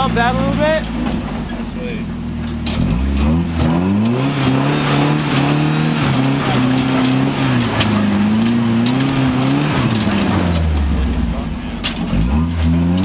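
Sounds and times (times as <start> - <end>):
truck engine revving: 0.0 - 13.0
sharp knocks and clicks: 6.6 - 10.9.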